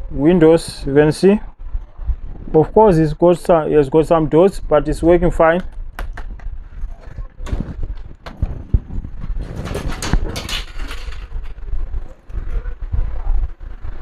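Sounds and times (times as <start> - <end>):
laptop parts clicking and clattering: 7.4 - 11.7.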